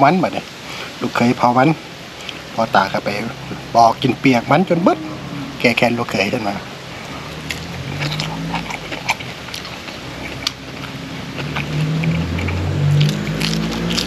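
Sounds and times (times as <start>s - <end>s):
passing vehicle engine hum: 3.0s - 14.0s
chewing with wet smacks: 7.0s - 14.0s.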